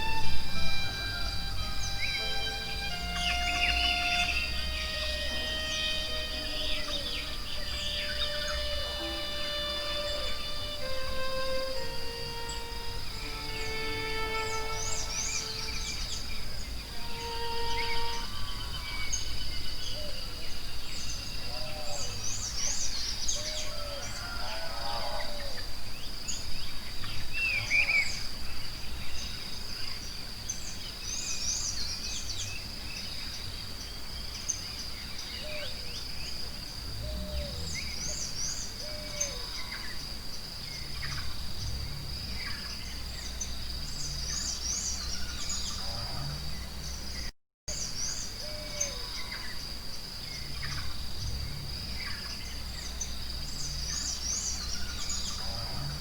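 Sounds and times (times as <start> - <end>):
high insect-like drone: 0.0 - 19.4
forest birds chirping: 0.0 - 56.0.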